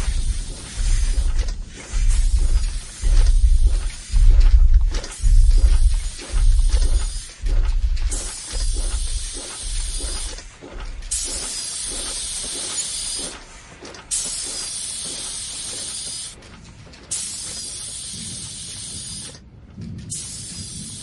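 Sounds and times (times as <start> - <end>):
faint rhythmic knocking: 0.0 - 20.9
low machine rumble: 0.0 - 21.0
machinery hissing releases: 8.1 - 16.4, 17.1 - 19.4, 20.1 - 21.0.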